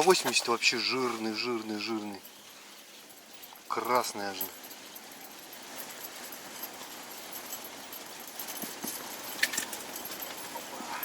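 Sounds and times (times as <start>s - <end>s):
steady wind: 0.0s - 11.0s
small clicks and knocks: 8.4s - 10.6s.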